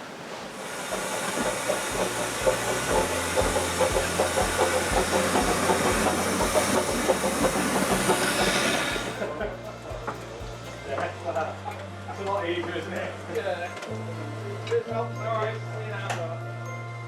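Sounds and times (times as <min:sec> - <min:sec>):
steam locomotive hissing: 0:00.0 - 0:14.8
regular low thumps: 0:02.0 - 0:10.9.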